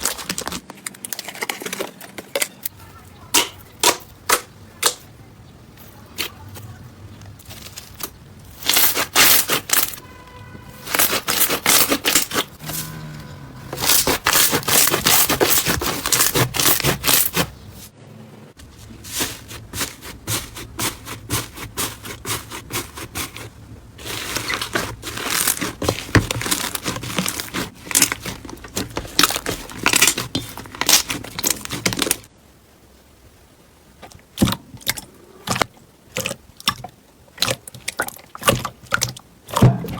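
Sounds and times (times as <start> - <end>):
crunchy slime crackling: 6.1 - 10.2, 13.6 - 17.9, 18.7 - 32.3.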